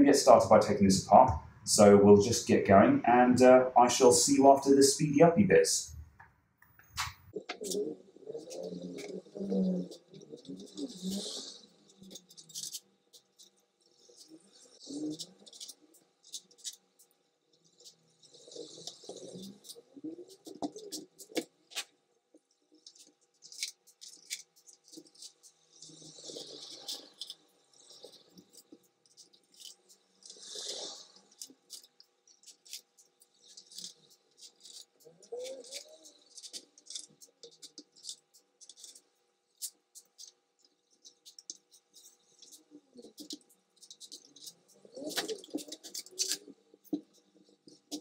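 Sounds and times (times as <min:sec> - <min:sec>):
clicks and scraping of laptop parts: 0:10.2 - 0:17.2, 0:17.8 - 0:48.0.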